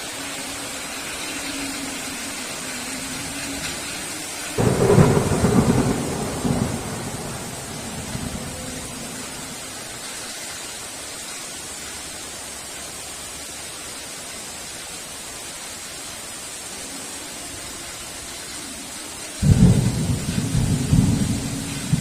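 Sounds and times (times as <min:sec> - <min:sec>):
heavy rain falling: 0:00.0 - 0:22.0
thunder rumble: 0:02.5 - 0:10.1, 0:19.4 - 0:22.0.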